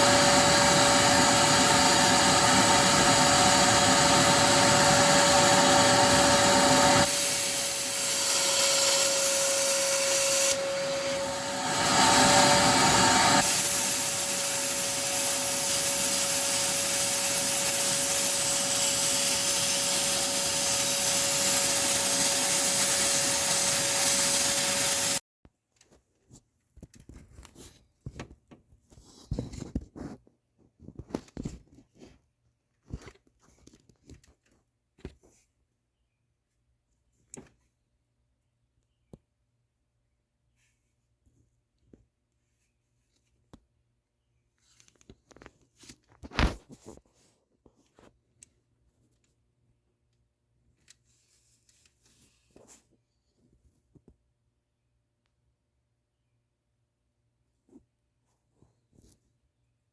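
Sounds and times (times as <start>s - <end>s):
shop vacuum running: 0.0s - 25.2s.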